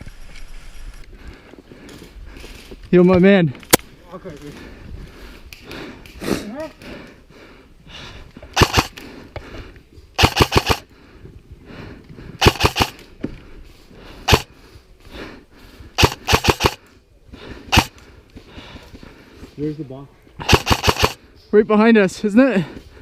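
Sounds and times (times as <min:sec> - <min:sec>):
airsoft rifles firing: 0:08.6 - 0:09.0, 0:10.2 - 0:10.9, 0:12.4 - 0:13.0, 0:14.3 - 0:14.5, 0:16.0 - 0:16.8, 0:17.7 - 0:17.9, 0:20.4 - 0:21.2.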